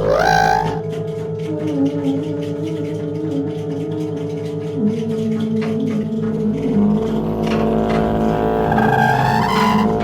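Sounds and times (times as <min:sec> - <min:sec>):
industrial electronic drone music: 0:00.0 - 0:10.0.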